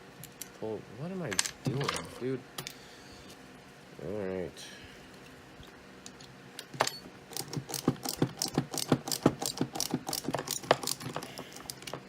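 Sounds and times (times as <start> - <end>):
small hand tools clicking and rattling: 7.3 - 12.0.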